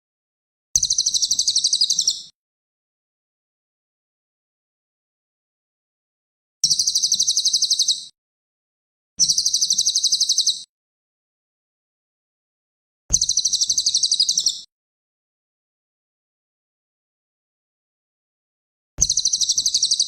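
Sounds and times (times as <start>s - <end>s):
songbird high-pitched trills: 0.8s - 2.3s, 13.2s - 14.7s.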